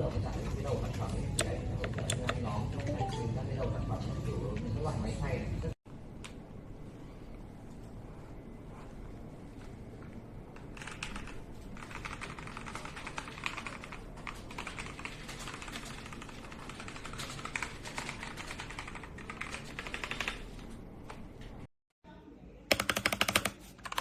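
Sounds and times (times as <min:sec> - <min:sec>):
mechanical keyboard typing: 0:10.6 - 0:20.5, 0:22.7 - 0:24.0.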